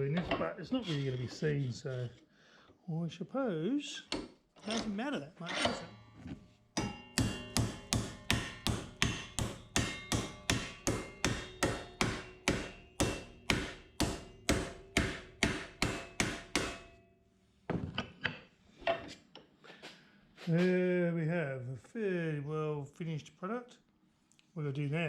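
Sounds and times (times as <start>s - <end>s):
hammer striking steel: 4.1s - 17.1s.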